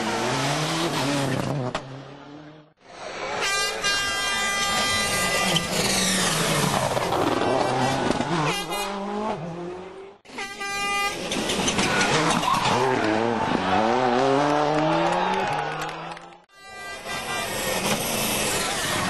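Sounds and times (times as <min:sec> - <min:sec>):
rally car engines revving: 0:00.0 - 0:02.8, 0:04.7 - 0:10.2, 0:11.3 - 0:16.5.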